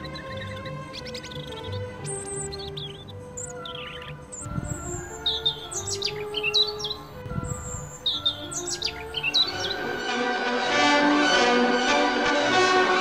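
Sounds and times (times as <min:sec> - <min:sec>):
bird chirps and whistled calls: 0:00.0 - 0:10.0
soft background music: 0:00.0 - 0:13.0.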